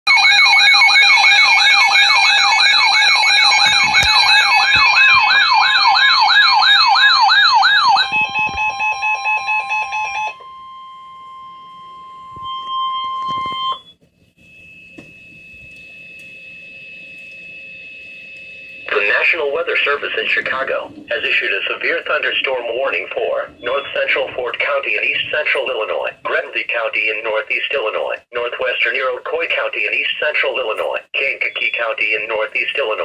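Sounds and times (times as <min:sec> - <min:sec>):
sweeping siren-like alert tone: 0:00.1 - 0:26.0
rapid pulsing beeps: 0:10.0 - 0:25.8, 0:31.2 - 0:33.0
steady single tone: 0:10.4 - 0:19.0.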